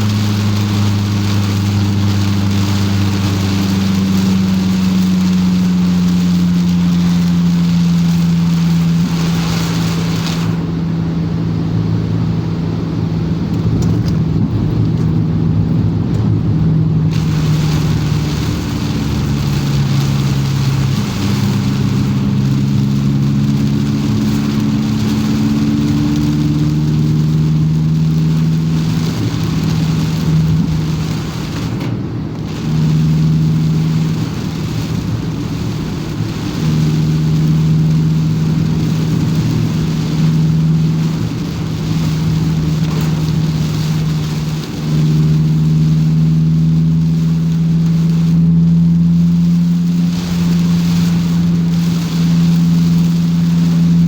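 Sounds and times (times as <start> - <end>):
car engine hum: 0.0 - 54.0
road and rain hiss: 0.0 - 54.0.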